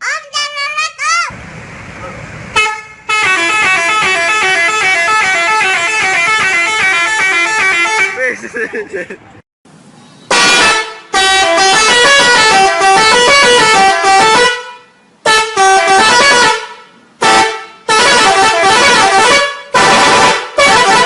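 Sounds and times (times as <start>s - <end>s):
multi-tone musical bus horn: 2.5s - 8.2s, 10.3s - 21.0s.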